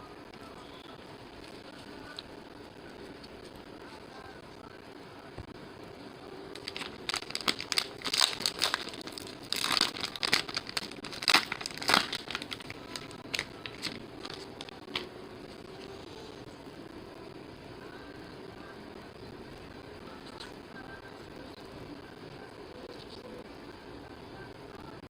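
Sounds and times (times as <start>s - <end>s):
wrappers crinkling and tearing: 6.6s - 15.1s.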